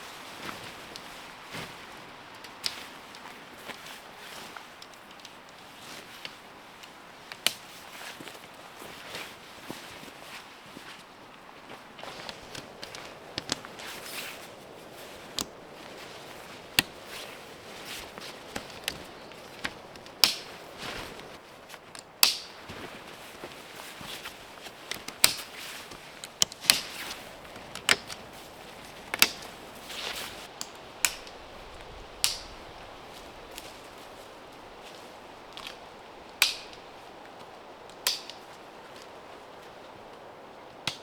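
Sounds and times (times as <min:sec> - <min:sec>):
outdoor background noise: 0:00.0 - 0:41.0
camping gear clicking and knocking: 0:12.0 - 0:39.2.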